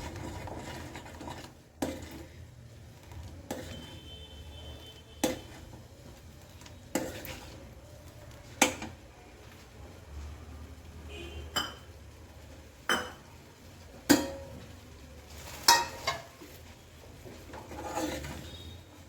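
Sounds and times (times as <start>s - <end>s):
spoon scraping pan: 0.0s - 7.8s, 15.4s - 18.8s
spoon clinking against pan: 11.5s - 11.9s, 15.7s - 16.3s.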